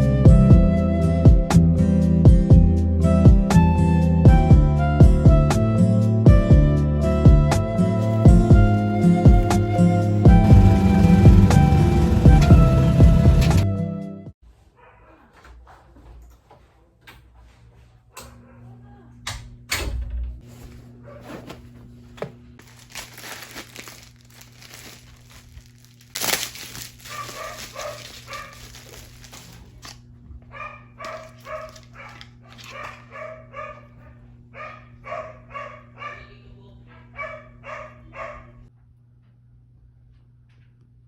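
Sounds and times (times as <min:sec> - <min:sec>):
rustling: 0:20.4 - 0:30.0, 0:31.0 - 0:33.1
small dog yapping: 0:27.1 - 0:29.5, 0:30.5 - 0:33.9.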